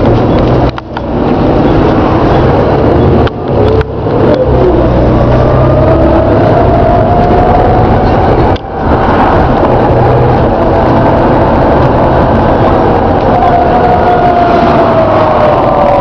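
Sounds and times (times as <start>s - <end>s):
bus engine running: 0.0s - 16.0s
road noise: 0.0s - 16.0s
groaning tone: 3.5s - 16.0s.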